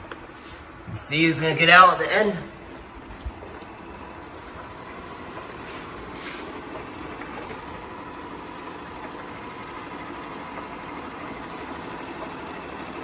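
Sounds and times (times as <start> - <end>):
faint steady whine: 0.0 - 13.0
robot vacuum motor humming: 3.4 - 13.0.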